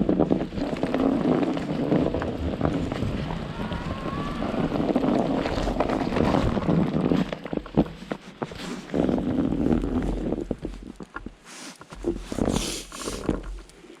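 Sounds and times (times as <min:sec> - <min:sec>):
wind buffeting microphone: 0:00.0 - 0:08.0.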